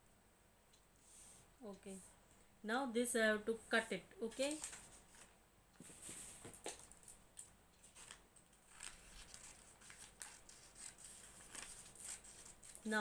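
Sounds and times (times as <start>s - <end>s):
scissors snipping paper: 8.8s - 13.0s.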